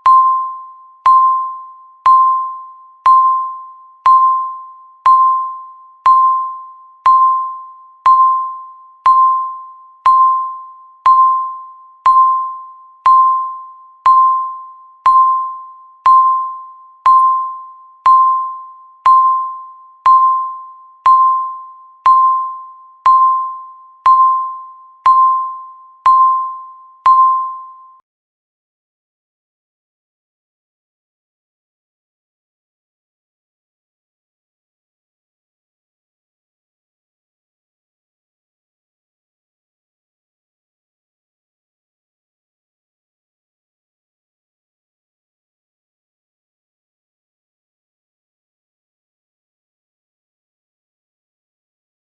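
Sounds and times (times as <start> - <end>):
countdown timer beep: 0.0 - 28.0.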